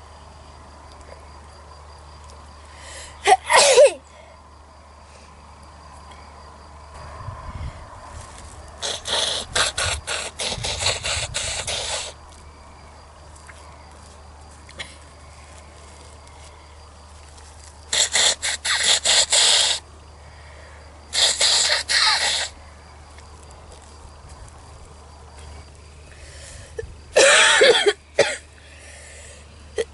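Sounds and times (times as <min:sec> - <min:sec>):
person blowing nose: 0:08.8 - 0:12.2, 0:17.9 - 0:19.8, 0:21.1 - 0:22.6.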